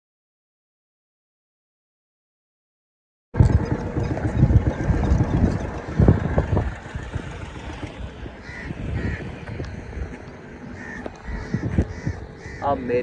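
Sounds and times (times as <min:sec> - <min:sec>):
low rumbling noise: 0:03.4 - 0:13.0
crows cawing: 0:08.4 - 0:13.0.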